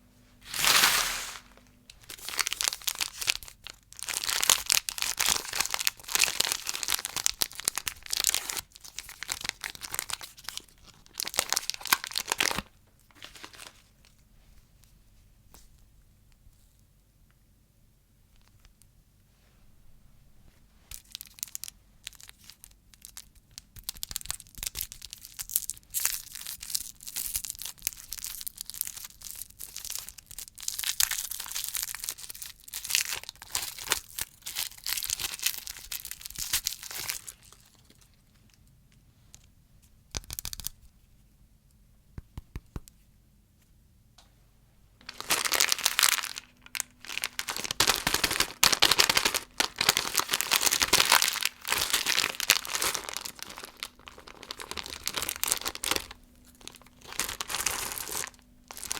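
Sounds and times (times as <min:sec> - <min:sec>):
plastic wrappers crinkling: 0:00.4 - 0:14.1, 0:20.9 - 0:38.5, 0:45.0 - 0:58.9.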